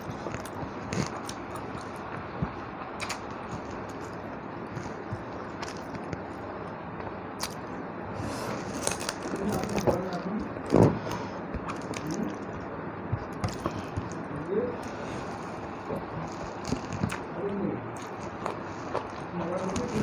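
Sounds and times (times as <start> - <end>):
wet chewing and lip-smacking: 0.0 - 6.4, 10.4 - 17.3, 18.0 - 20.0
small mouth clicks: 2.9 - 4.1.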